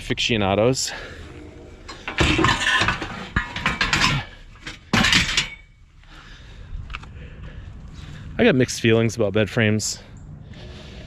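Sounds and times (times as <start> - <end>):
metal bed rails clanking: 1.2 - 5.7.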